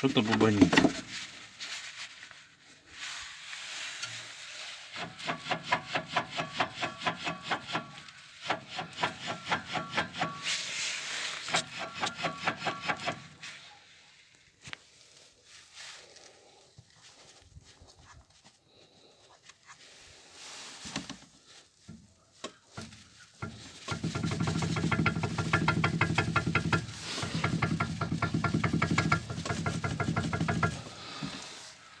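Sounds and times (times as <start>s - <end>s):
fast even knocking: 23.9s - 30.8s.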